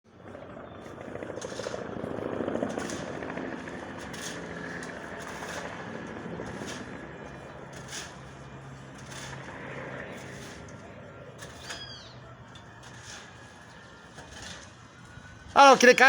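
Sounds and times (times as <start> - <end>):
helicopter rotor chop: 0.1 - 11.6.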